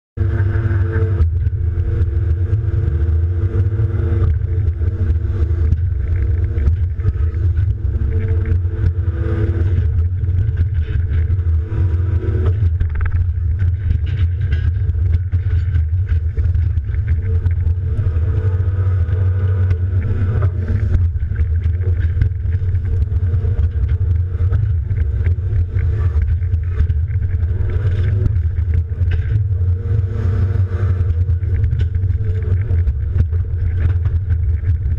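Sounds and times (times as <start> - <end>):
excavator diesel engine running: 0.2 - 34.9.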